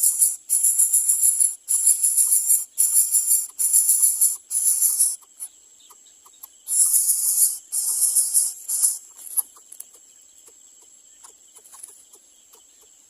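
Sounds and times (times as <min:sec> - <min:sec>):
nestlings hissing begging calls: 0:00.0 - 0:09.8.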